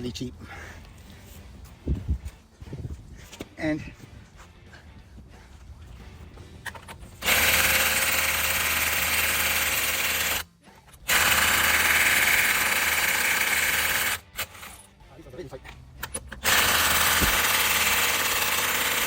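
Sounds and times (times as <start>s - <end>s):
power tool running: 7.2s - 10.4s, 11.1s - 14.7s, 16.4s - 19.0s.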